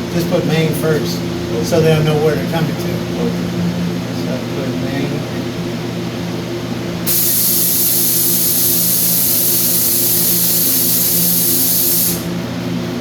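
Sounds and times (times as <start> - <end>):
low machine hum: 0.0 - 13.0
loud hiss of air rushing out: 7.1 - 12.4.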